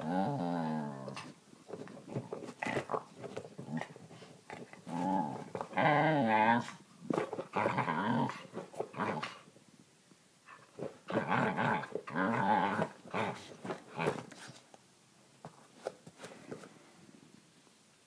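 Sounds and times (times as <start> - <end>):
dog making growly vocal noises: 0.0 - 1.4, 2.5 - 6.8, 7.4 - 9.4, 10.8 - 14.2.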